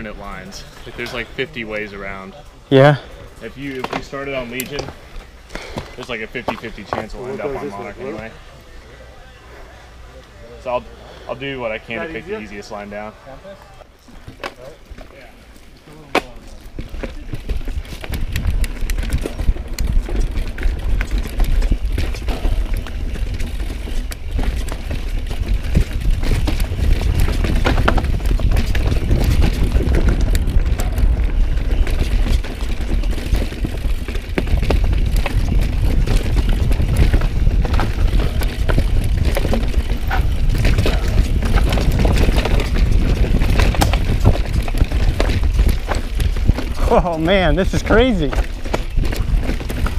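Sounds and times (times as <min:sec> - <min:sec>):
bike knocks and rattles: 0:03.7 - 0:05.0, 0:14.1 - 0:49.9
wind buffeting microphone: 0:16.7 - 0:49.9.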